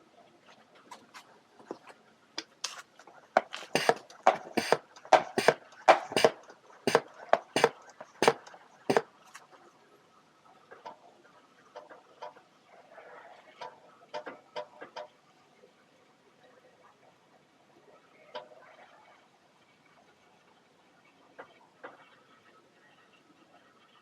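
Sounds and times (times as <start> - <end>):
sharp clicks and knocks: 3.4 - 9.0.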